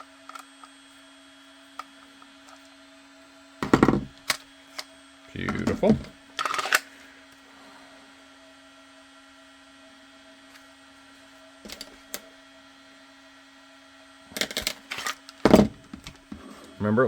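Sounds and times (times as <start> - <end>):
steady low hum: 0.0 - 13.2, 14.0 - 17.0
tools knocking and clacking: 3.6 - 4.1.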